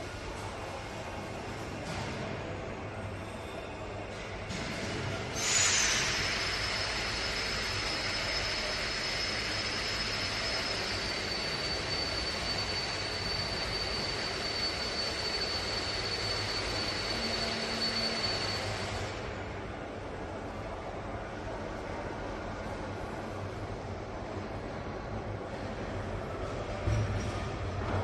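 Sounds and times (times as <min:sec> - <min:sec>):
thin high whine: 0:05.4 - 0:19.6.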